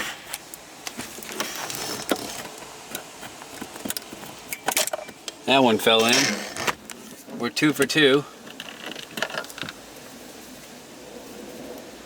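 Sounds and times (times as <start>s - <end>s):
metal scraping on plastic: 6.0s - 7.4s.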